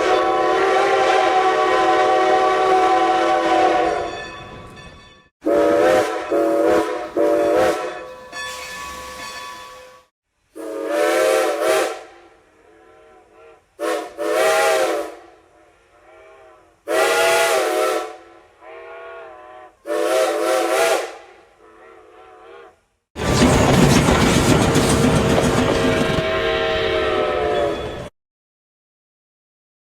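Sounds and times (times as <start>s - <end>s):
steam locomotive whistle blasts: 0.0s - 4.3s, 5.4s - 9.3s, 10.6s - 22.8s, 25.9s - 28.1s.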